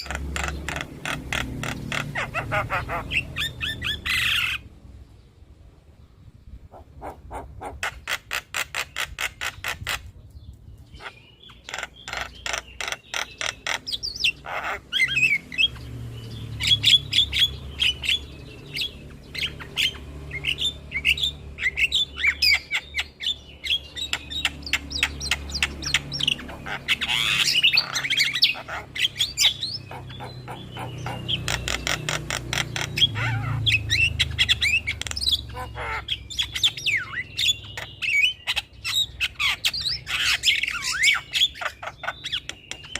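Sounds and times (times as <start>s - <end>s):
bird squawks: 0.0s - 4.7s, 6.7s - 10.1s, 10.9s - 15.8s, 16.6s - 42.9s
bird song with clicks and whistles: 16.6s - 42.9s.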